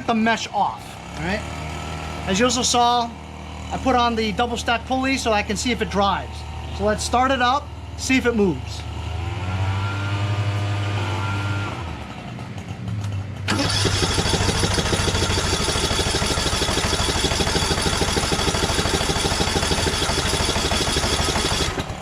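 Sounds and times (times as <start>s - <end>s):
engine running: 9.0s - 22.0s
electric starter cranking: 13.5s - 22.0s.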